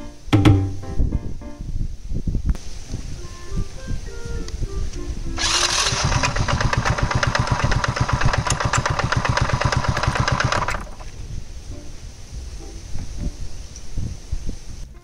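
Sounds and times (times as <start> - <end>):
motorcycle engine clattering: 5.4 - 11.2.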